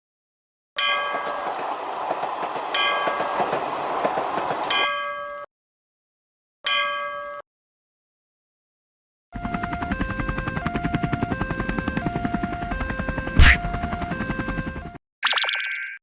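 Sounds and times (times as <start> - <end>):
cartoon train clattering past: 0.8 - 5.4.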